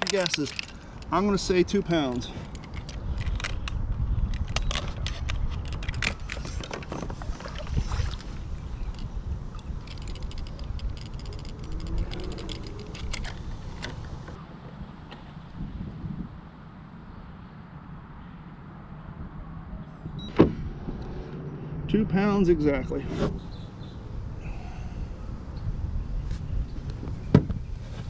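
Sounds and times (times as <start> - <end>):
wind buffeting microphone: 0.0 - 17.3, 18.9 - 28.0
gear clicking and knocking: 9.8 - 14.4.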